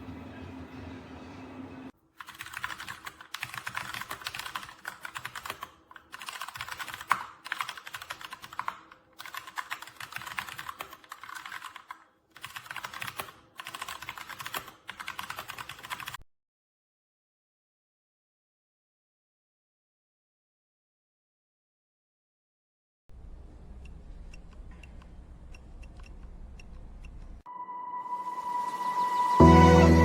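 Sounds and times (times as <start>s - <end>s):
mechanical keyboard typing: 2.2s - 16.2s.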